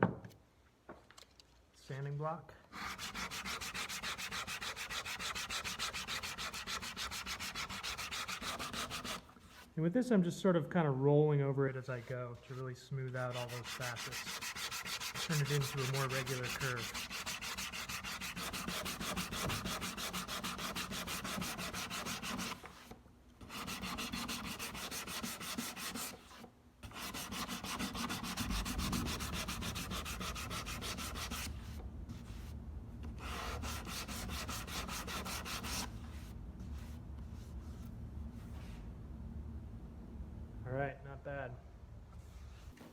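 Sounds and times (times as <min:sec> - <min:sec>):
sandpaper sanding wood: 0:02.7 - 0:09.7, 0:12.0 - 0:32.4, 0:33.2 - 0:36.2.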